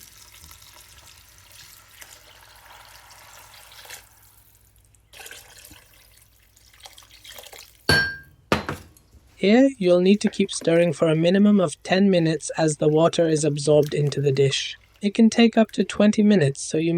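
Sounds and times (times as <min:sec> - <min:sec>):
water pouring into pot: 0:00.0 - 0:07.9.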